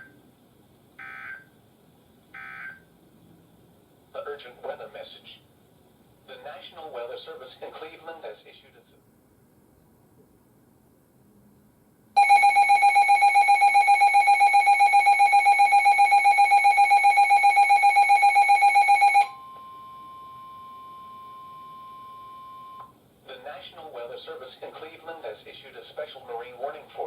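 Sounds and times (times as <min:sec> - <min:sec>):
rapid pulsing electronic alarm: 0:01.0 - 0:01.5, 0:02.4 - 0:02.8, 0:12.2 - 0:22.8.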